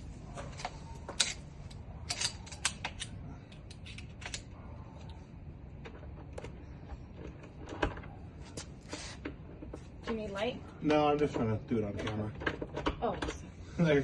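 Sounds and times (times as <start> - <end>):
tool clicking in lock cylinder: 1.1 - 4.5.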